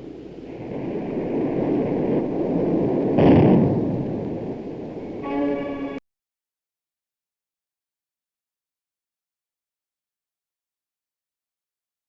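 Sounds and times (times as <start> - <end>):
aircraft engines roaring: 0.0 - 6.0
loud blast: 0.5 - 6.0
short buzzing tone: 5.2 - 6.0.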